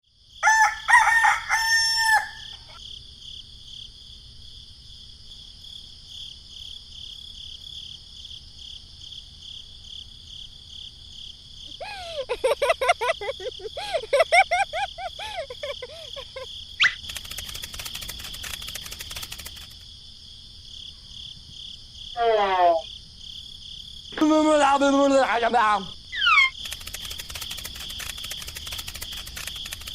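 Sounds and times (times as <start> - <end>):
insects chirring: 0.1 - 29.9
rooster crowing: 0.4 - 2.8
rapid clicks: 16.9 - 19.8, 26.5 - 29.9.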